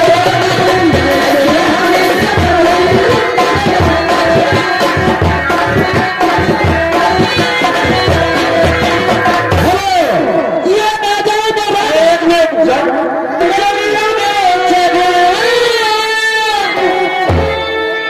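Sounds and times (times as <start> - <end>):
tabla strokes: 0.0 - 10.0.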